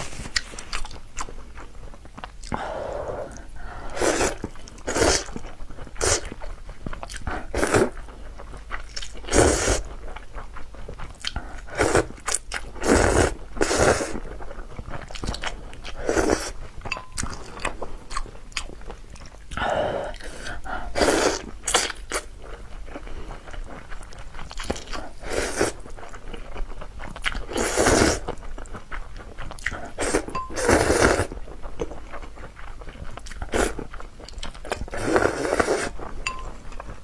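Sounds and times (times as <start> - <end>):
eating and chewing noodle soup: 0.0 - 37.0.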